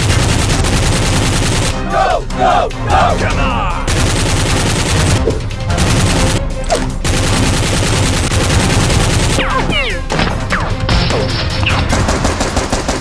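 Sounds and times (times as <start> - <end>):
rapid automatic gunfire: 0.0 - 1.9, 3.9 - 10.0, 11.5 - 13.0.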